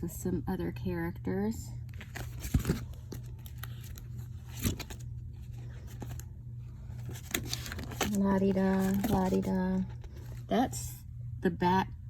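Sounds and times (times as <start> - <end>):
steady low hum: 0.0 - 12.0
paper and plastic rustling: 1.9 - 10.5.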